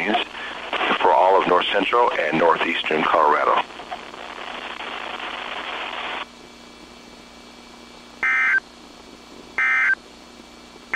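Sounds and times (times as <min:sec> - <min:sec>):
radio hiss: 0:00.0 - 0:06.4
buzzy data tones: 0:08.2 - 0:08.6, 0:09.6 - 0:10.0.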